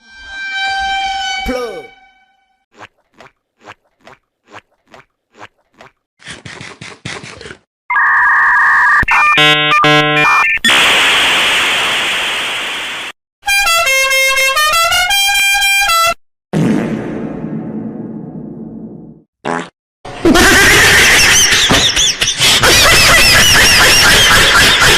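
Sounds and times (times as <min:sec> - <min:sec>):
two-tone horn blast: 0:00.0 - 0:02.6
electronic beeping tune: 0:07.9 - 0:10.6.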